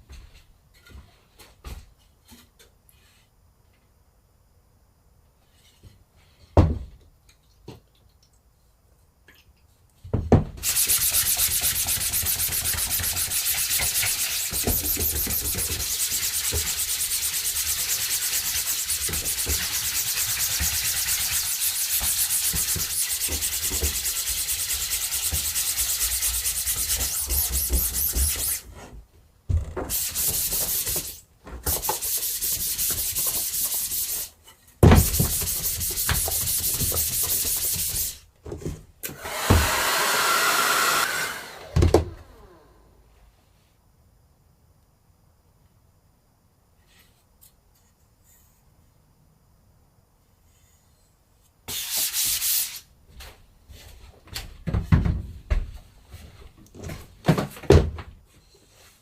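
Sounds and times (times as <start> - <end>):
spray gun hissing: 10.6 - 15.1.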